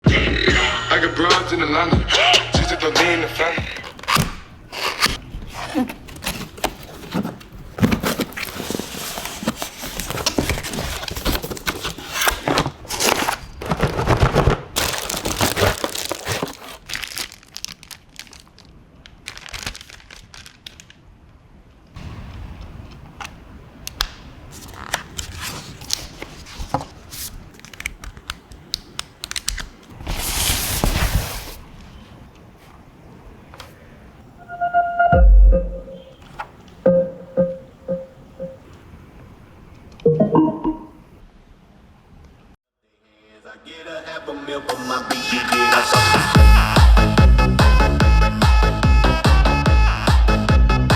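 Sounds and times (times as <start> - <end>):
crinkling rustling handling noise: 3.7 - 21.1, 24.4 - 33.0.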